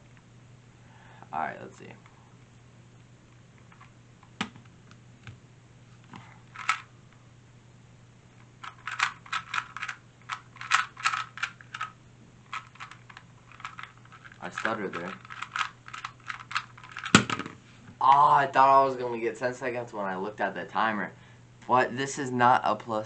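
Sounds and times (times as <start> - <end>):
plastic puzzle cube clacking: 8.6 - 11.9, 12.5 - 17.5.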